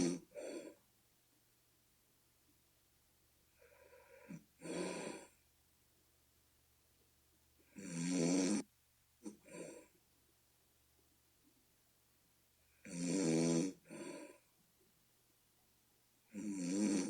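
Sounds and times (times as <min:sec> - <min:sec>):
person snoring loudly: 0:00.0 - 0:00.6, 0:07.7 - 0:08.6, 0:12.8 - 0:14.1, 0:16.3 - 0:17.0
softer sound beside snores: 0:00.0 - 0:00.8, 0:03.6 - 0:05.4, 0:07.6 - 0:09.9, 0:12.8 - 0:14.5, 0:16.3 - 0:17.0.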